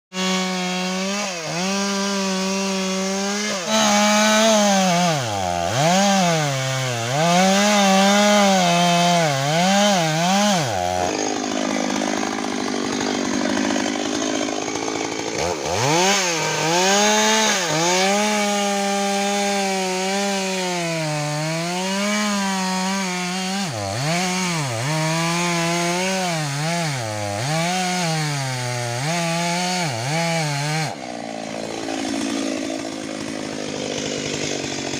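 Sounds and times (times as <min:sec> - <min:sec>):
chainsaw cutting wood: 0:00.1 - 0:34.9.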